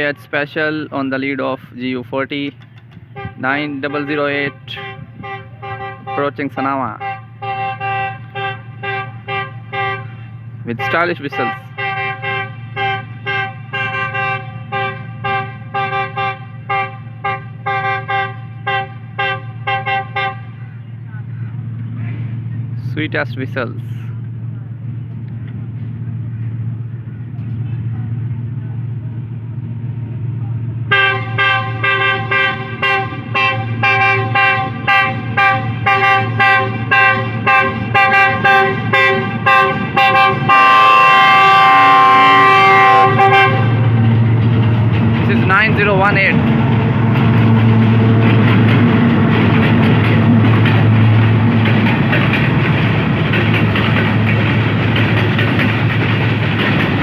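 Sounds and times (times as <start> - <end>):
low engine rumble: 0.0 - 57.0
locomotive air horn blasts: 3.1 - 20.8, 30.9 - 44.2.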